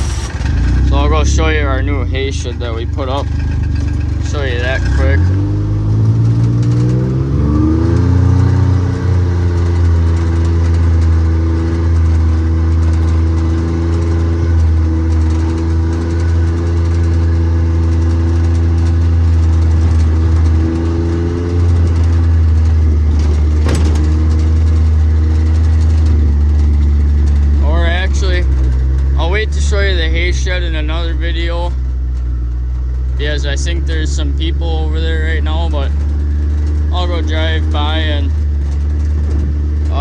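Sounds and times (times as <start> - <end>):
vehicle engine running: 0.0 - 40.0.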